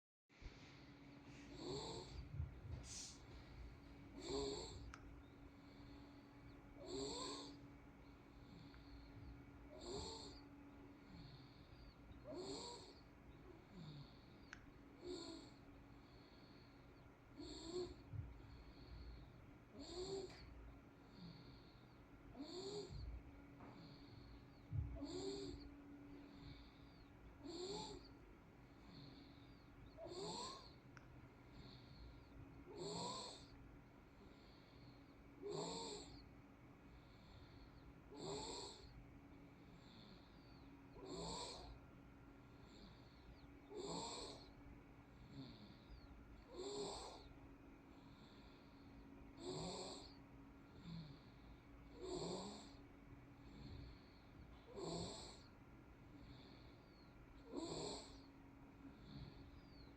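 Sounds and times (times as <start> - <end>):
faint baby breaths: 0.4 - 30.8
baby snoring: 1.3 - 3.3, 4.1 - 5.0, 5.6 - 10.4, 11.0 - 16.8, 17.4 - 30.8, 31.5 - 33.6, 34.2 - 36.3, 37.0 - 39.0, 39.8 - 41.8, 42.5 - 44.6, 45.2 - 48.8, 49.4 - 52.8, 53.4 - 55.6, 56.2 - 58.3, 58.9 - 59.9
baby breathing: 1.4 - 3.6.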